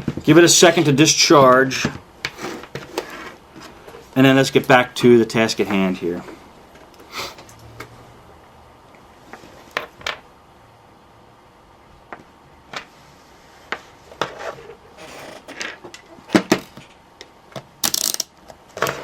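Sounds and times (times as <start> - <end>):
tools clicking on a workbench: 17.8 - 19.0.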